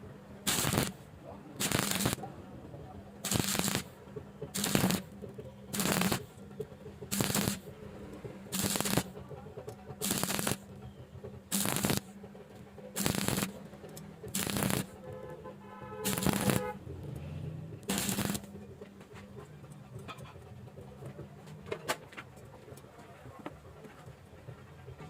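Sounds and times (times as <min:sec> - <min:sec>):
welding arc crackling and sizzling: 0:00.5 - 0:01.0, 0:01.6 - 0:02.2, 0:03.2 - 0:05.1, 0:05.7 - 0:06.3, 0:07.1 - 0:07.7, 0:08.5 - 0:09.2, 0:10.0 - 0:10.7, 0:11.5 - 0:12.1, 0:13.0 - 0:13.6, 0:14.3 - 0:15.0, 0:16.0 - 0:16.8, 0:17.8 - 0:18.5.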